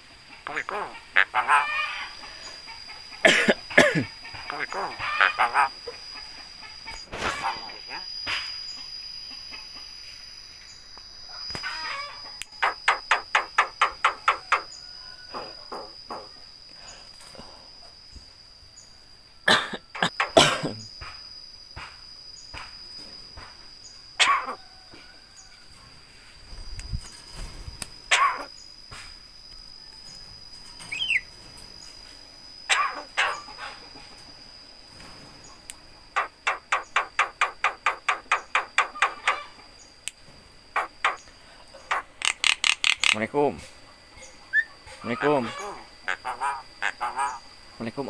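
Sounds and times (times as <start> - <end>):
myna giving harsh calls: 0.5 - 1.9, 4.5 - 5.8.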